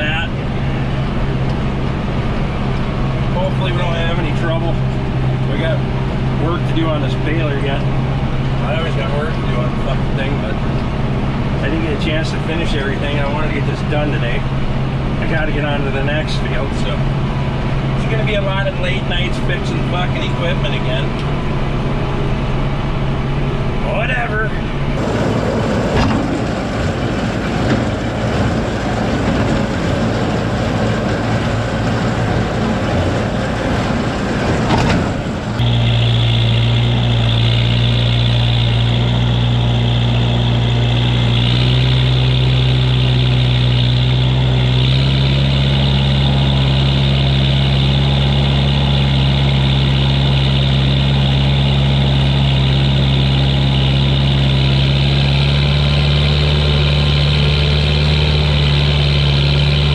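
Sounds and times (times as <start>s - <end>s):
tractor engine drone: 0.0s - 59.9s
hay baler machinery clatter: 25.0s - 40.0s.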